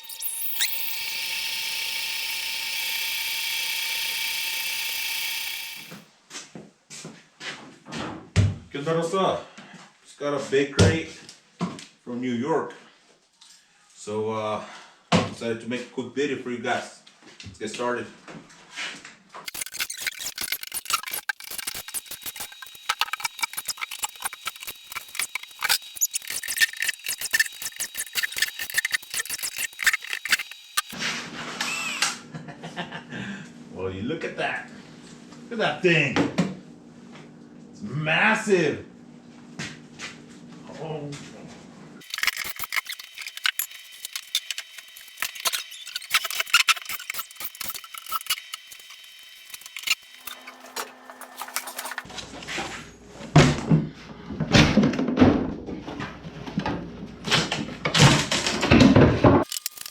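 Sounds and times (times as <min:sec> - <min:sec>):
high-pitched clicking and rattling: 0:00.0 - 0:06.0, 0:19.5 - 0:31.0, 0:42.0 - 0:52.1, 0:59.4 - 0:59.9
crate clicks and scrapes: 0:49.6 - 0:52.1.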